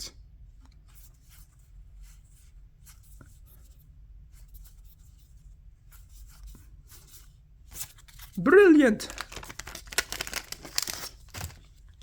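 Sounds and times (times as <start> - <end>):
cards sliding and flipping: 9.3 - 11.7.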